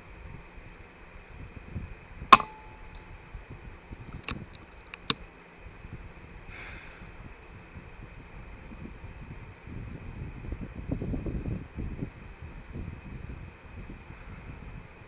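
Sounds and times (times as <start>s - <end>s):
air rifle shot: 2.4s - 3.0s
faint sharp clicks: 4.2s - 5.2s.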